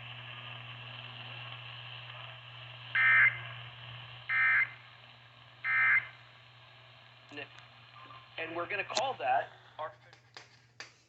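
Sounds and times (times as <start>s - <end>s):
steady low hum: 0.0s - 11.0s
buzzy digital data tones: 4.3s - 4.9s, 5.6s - 6.2s.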